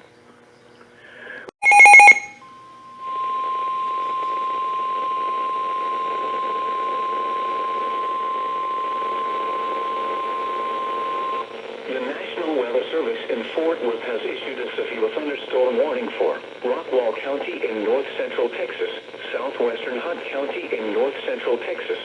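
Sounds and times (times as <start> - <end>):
emergency alert tone: 1.6 - 2.4
radio hiss: 8.7 - 22.0.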